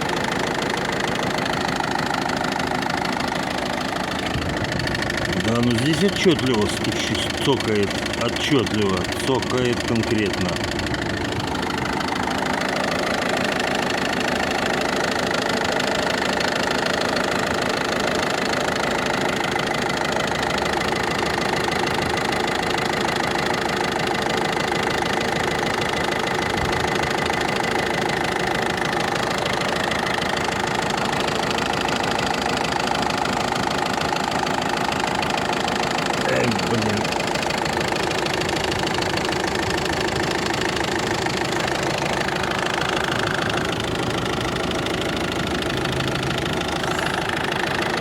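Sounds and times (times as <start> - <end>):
diesel engine idling: 0.0 - 48.0
rapid ticking knock: 19.1 - 48.0.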